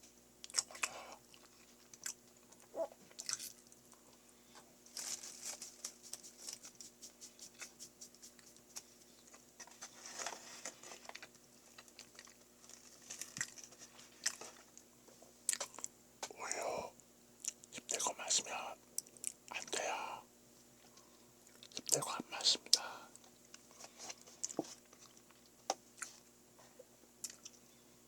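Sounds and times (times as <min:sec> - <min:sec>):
mouth chewing sounds: 0:00.4 - 0:04.0.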